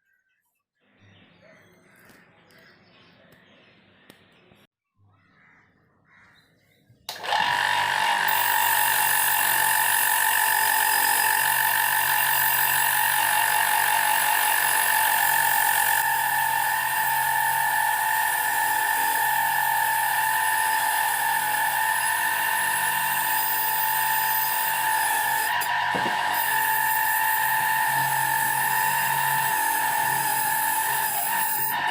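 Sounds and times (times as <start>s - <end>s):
power tool whining: 7.1s - 31.9s.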